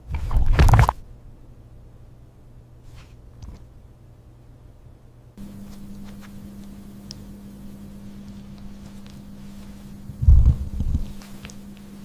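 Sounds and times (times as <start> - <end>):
steady low hum: 0.0 - 12.0
loud low thud and rumble: 10.2 - 11.1.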